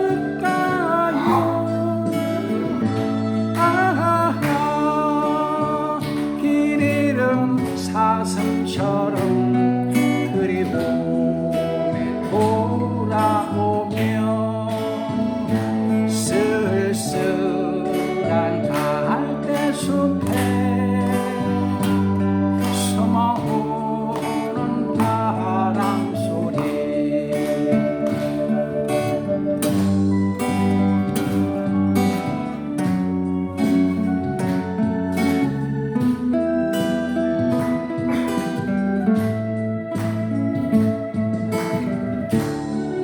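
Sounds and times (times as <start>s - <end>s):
plucked guitar: 0.0s - 43.0s
steady bass notes: 0.0s - 43.0s
vibrato melody line: 0.0s - 43.0s.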